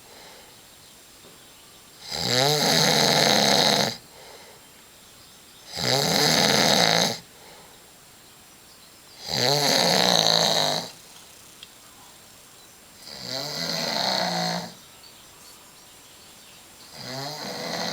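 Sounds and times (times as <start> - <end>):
man snoring: 2.0 - 4.0, 5.7 - 7.2, 9.2 - 11.0, 13.0 - 14.8, 16.9 - 17.9.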